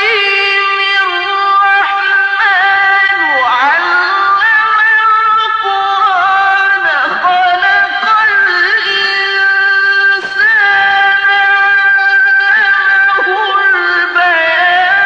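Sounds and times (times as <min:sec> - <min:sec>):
man chanting recitation: 0:00.0 - 0:15.0.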